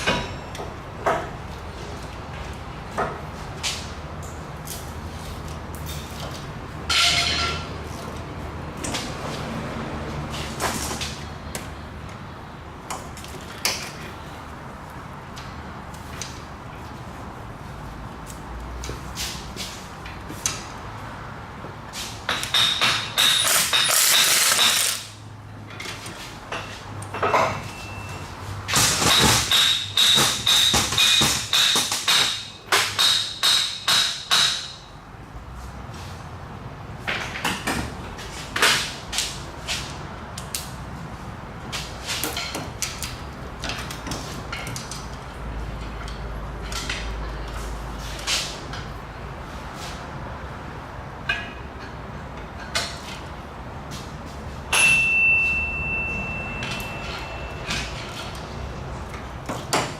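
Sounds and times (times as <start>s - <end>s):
metal tools clinking: 6.9s - 7.7s, 54.7s - 58.4s.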